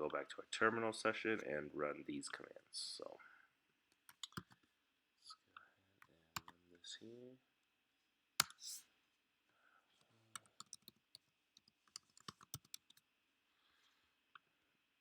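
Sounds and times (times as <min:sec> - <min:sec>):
keyboard keys clicking: 0:04.1 - 0:04.6, 0:11.6 - 0:13.0.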